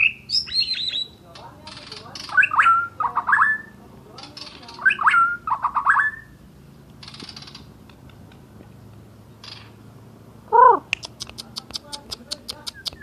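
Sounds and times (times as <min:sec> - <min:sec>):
songbird whistling: 0:00.0 - 0:01.2, 0:02.2 - 0:03.8, 0:04.8 - 0:06.4, 0:12.5 - 0:13.0.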